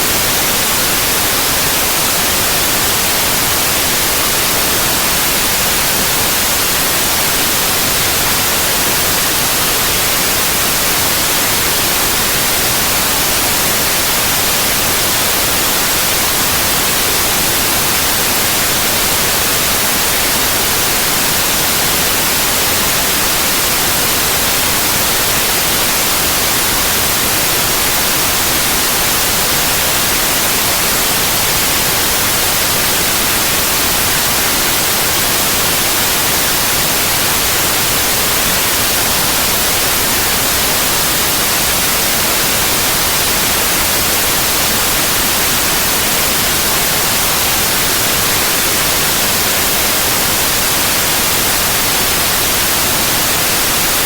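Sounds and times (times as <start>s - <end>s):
electronic white noise hiss: 0.0s - 54.0s.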